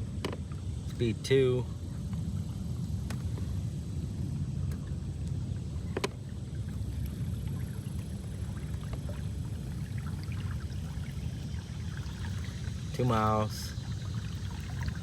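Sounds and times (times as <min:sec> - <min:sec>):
electric motor and water rumble: 0:00.0 - 0:15.0.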